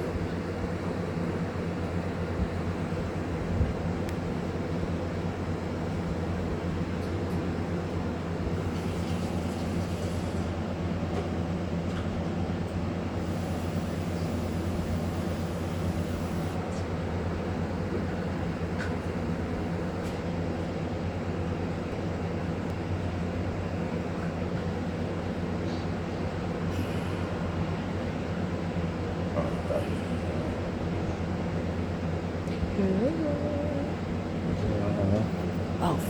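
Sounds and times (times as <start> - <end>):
steady low hum: 20.8 - 36.0.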